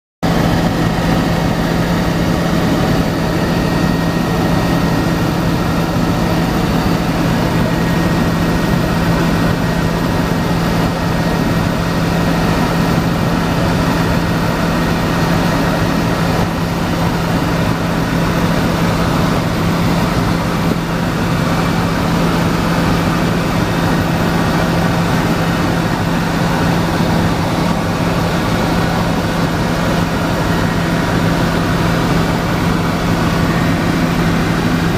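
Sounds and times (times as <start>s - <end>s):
helicopter engine and rotor: 0.2s - 34.9s.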